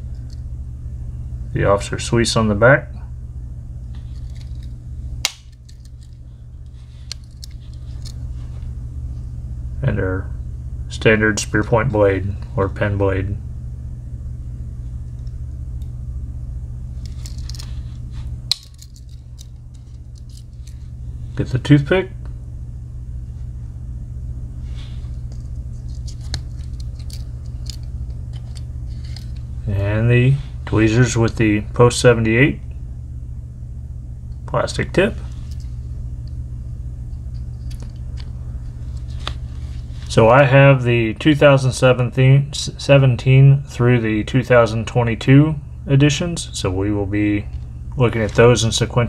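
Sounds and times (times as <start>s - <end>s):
steady low hum: 0.0s - 49.0s
knife blade snapping shut: 5.2s - 5.6s.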